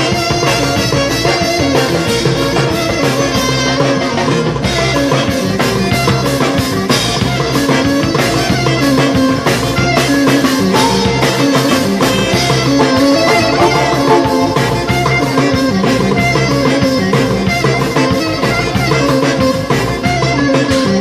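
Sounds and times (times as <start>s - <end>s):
percussion: 0.0s - 21.0s
bouzouki: 4.8s - 21.0s
clarinet: 9.8s - 21.0s.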